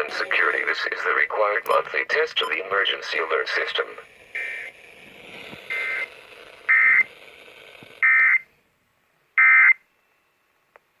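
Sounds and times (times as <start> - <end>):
faint radio hiss: 0.0 - 11.0
buzzy digital squawks: 5.7 - 8.4.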